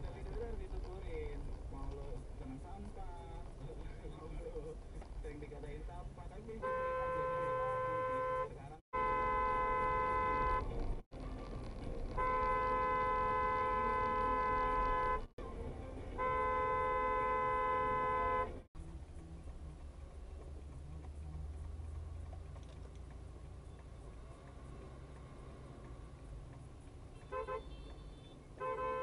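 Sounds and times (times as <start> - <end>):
vehicle horn blasts: 6.6 - 10.8, 12.2 - 15.3, 16.1 - 18.7, 27.2 - 29.0.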